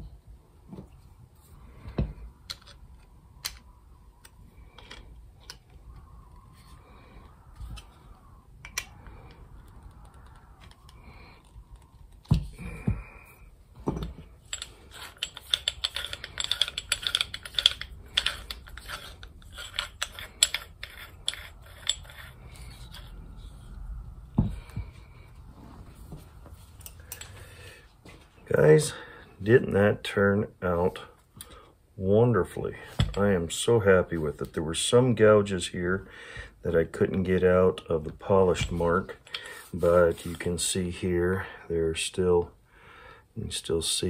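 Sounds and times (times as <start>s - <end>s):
metal tool clicking and rattling: 14.4s - 23.1s.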